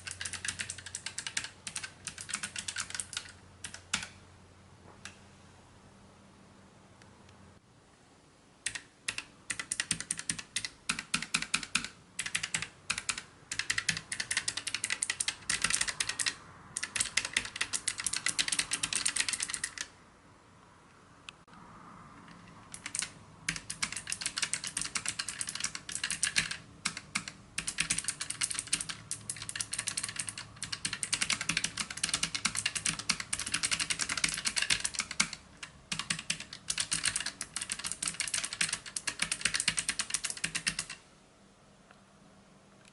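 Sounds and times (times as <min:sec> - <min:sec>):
clicky mechanical keyboard typing: 0:00.0 - 0:04.2, 0:08.6 - 0:19.9, 0:22.3 - 0:41.0.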